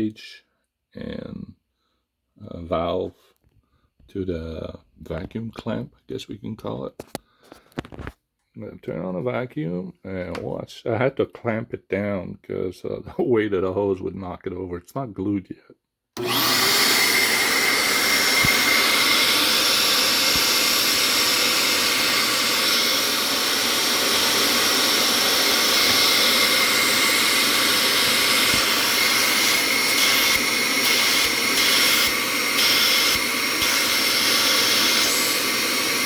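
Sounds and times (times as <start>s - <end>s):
vacuum running: 16.2s - 36.0s
vacuum whine: 16.2s - 36.0s.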